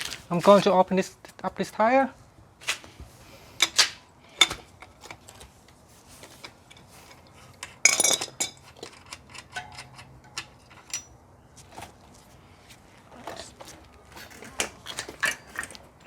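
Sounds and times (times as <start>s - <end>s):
metal tools clinking: 6.4s - 11.2s.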